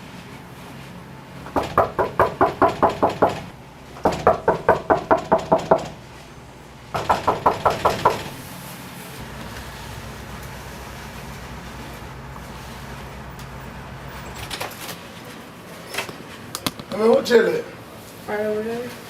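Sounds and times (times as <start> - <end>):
knocking on a door: 1.5 - 6.0, 6.9 - 8.4.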